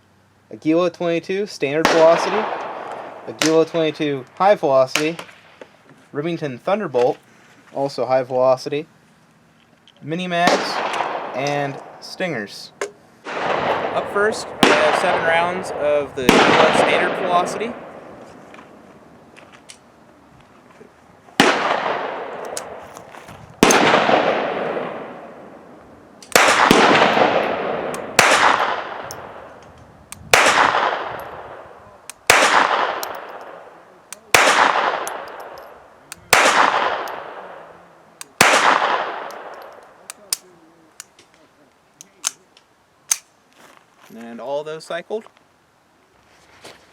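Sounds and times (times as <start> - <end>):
pistol shots echoing: 1.8 - 4.1, 10.4 - 18.2, 21.4 - 22.8, 23.6 - 29.6, 30.3 - 40.4.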